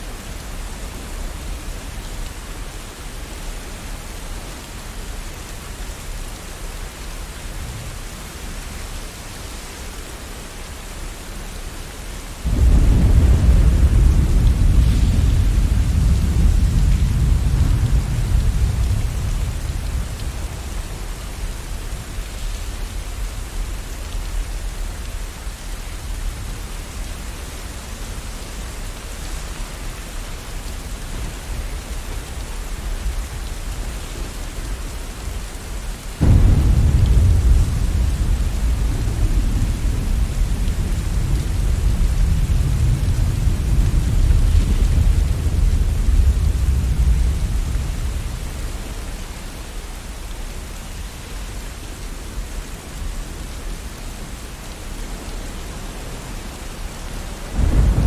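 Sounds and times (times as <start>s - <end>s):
steady rain: 0.0s - 58.0s
thunder rumbling: 12.4s - 23.7s, 36.2s - 49.0s, 57.4s - 58.0s.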